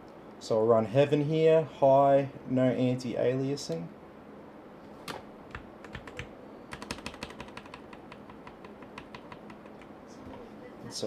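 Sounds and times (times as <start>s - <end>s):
keyboard key presses: 5.1s - 9.9s.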